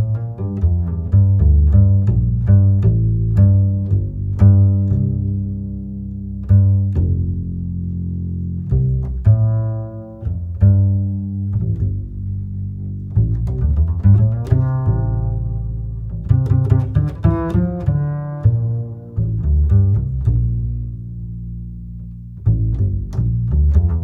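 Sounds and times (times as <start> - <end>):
low plucked instrumental music: 0.0 - 24.0.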